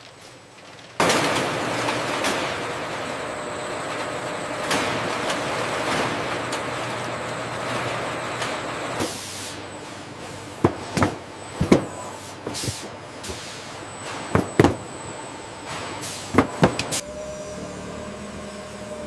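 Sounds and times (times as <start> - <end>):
steady background noise: 0.0 - 19.0
sharp knocks and bangs: 14.2 - 14.8.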